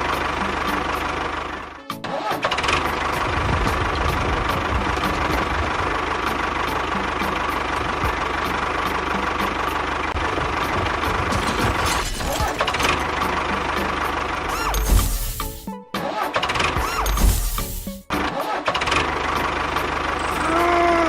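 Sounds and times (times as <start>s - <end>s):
tractor engine idling: 0.0s - 1.8s, 2.4s - 11.8s, 12.4s - 15.7s, 18.8s - 21.0s.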